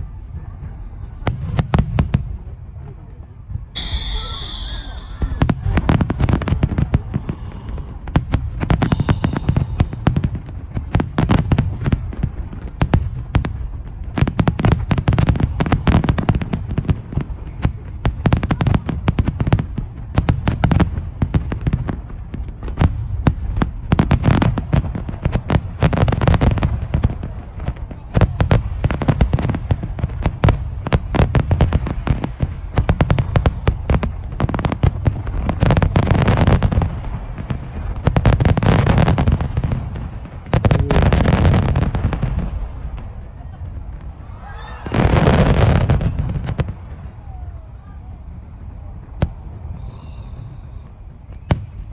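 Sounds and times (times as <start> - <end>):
fireworks booming and crackling: 0.0 - 51.9.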